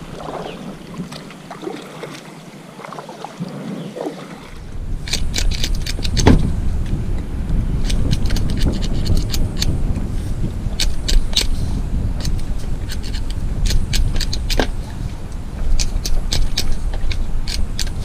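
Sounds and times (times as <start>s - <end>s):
low rumbling noise: 0.0s - 13.6s.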